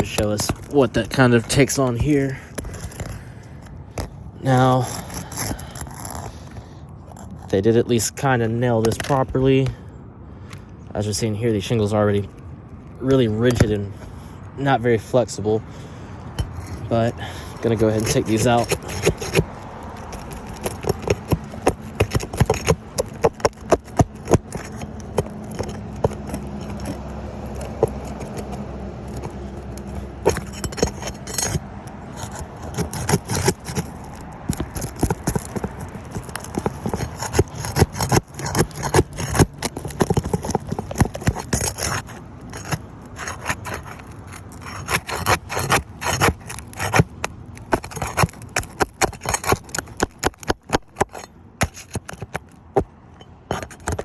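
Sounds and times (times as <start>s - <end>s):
metal tool clicks and scrapes: 0.0s - 7.6s, 8.8s - 9.8s, 16.3s - 54.0s
nails pried from shingles: 0.0s - 10.6s, 13.1s - 14.3s, 15.7s - 54.0s.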